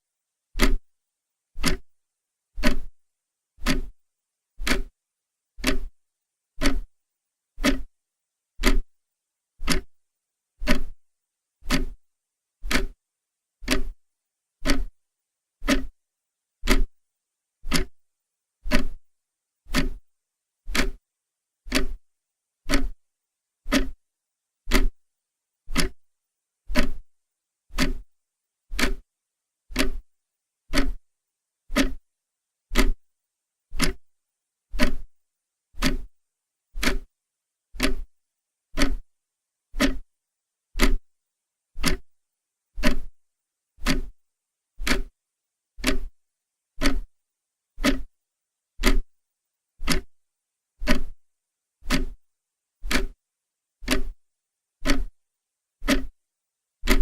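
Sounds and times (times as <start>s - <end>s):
clock ticking: 0.6s - 0.8s, 1.6s - 1.8s, 2.6s - 2.9s, 3.6s - 3.9s, 4.6s - 4.9s, 5.6s - 5.9s, 6.6s - 6.9s, 7.6s - 7.9s, 8.6s - 8.9s, 9.6s - 9.9s, 10.6s - 11.0s, 11.6s - 12.0s, 12.6s - 13.0s, 13.6s - 14.0s, 14.6s - 15.0s, 15.6s - 15.9s, 16.6s - 16.9s, 17.7s - 18.0s, 18.7s - 19.0s, 19.7s - 20.0s, 20.7s - 21.0s, 21.7s - 22.0s, 22.7s - 23.0s, 23.7s - 24.0s, 24.7s - 25.0s, 25.7s - 26.0s, 26.7s - 27.0s, 27.7s - 28.0s, 28.7s - 29.0s, 29.7s - 30.1s, 30.7s - 31.0s, 31.7s - 32.0s, 32.7s - 33.0s, 33.8s - 34.1s, 34.8s - 35.1s, 35.8s - 36.1s, 36.8s - 37.1s, 37.8s - 38.1s, 38.8s - 39.1s, 39.8s - 40.0s, 40.8s - 41.0s, 41.8s - 42.2s, 42.8s - 43.1s, 43.8s - 44.2s, 44.8s - 45.2s, 45.8s - 46.2s, 46.8s - 47.1s, 47.8s - 48.1s, 48.8s - 49.1s, 49.8s - 50.2s, 50.8s - 51.2s, 51.8s - 52.2s, 52.8s - 53.2s, 53.8s - 54.2s, 54.8s - 55.2s, 55.8s - 56.1s.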